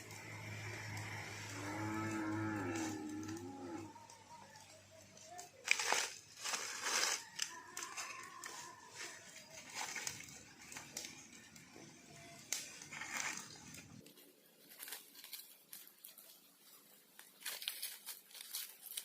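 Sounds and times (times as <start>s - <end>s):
crinkling rustles: 0.0s - 19.0s
cow mooing: 0.2s - 4.2s.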